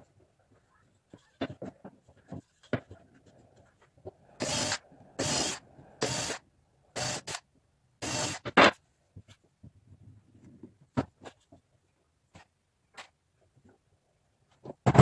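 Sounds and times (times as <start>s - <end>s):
woodworking tool cutting wood: 4.4s - 6.4s.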